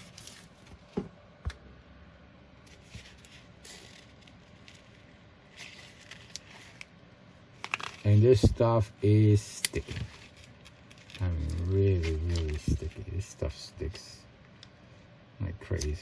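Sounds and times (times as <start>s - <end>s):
velcro tape rustling: 0.0s - 0.7s, 2.6s - 8.6s, 9.6s - 13.2s.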